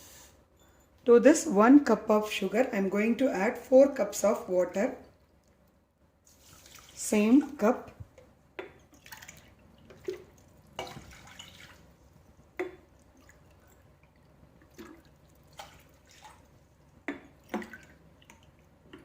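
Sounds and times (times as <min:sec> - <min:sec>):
water splashing into a pan: 0:06.3 - 0:07.6, 0:08.8 - 0:11.9, 0:12.6 - 0:18.5.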